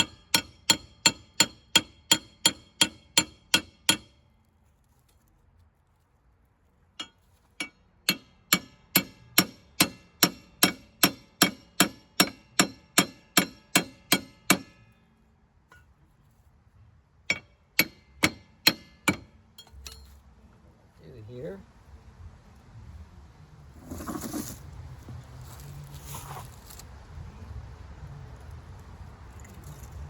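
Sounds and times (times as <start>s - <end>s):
hammer blows on metal: 7.0s - 14.9s.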